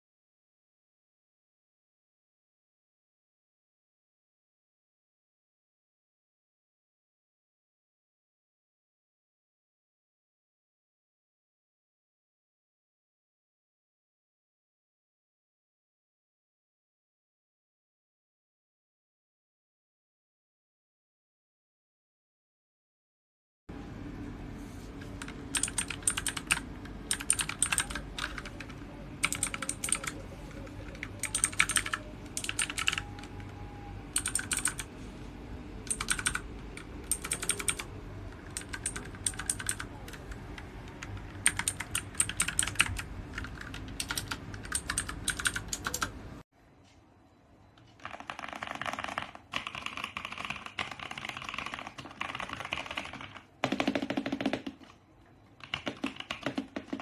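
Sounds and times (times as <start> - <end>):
mechanical keyboard typing: 25.1 - 34.9, 35.8 - 46.2, 47.8 - 55.0, 55.6 - 57.0.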